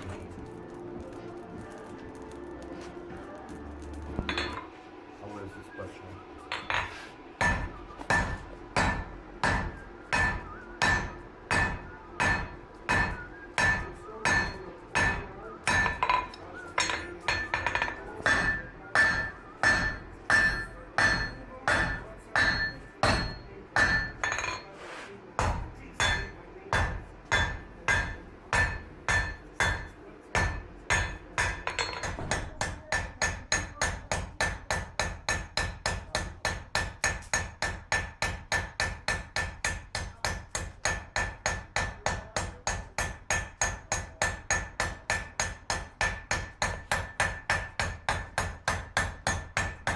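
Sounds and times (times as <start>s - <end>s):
hammer striking metal on anvil: 4.2s - 4.7s, 6.5s - 24.7s, 25.4s - 49.9s.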